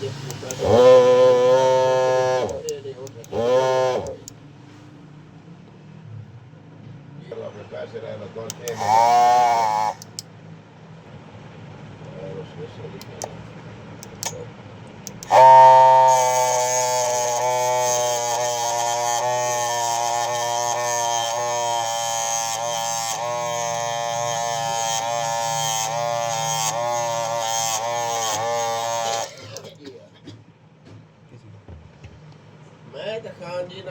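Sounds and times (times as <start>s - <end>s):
small electric motor whining: 0.0s - 4.4s, 8.5s - 10.2s, 15.1s - 29.7s.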